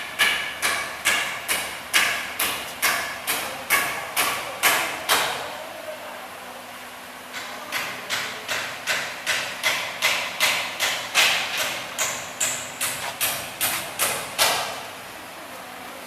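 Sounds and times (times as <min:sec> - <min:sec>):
sharp knocks: 0:00.2 - 0:05.4, 0:07.7 - 0:14.8.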